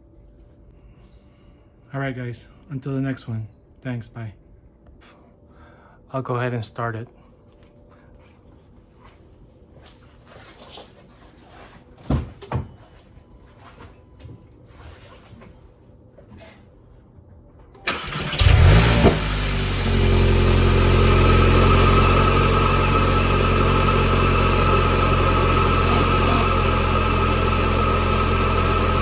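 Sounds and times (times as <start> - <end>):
car engine starting and idling: 17.8 - 29.0.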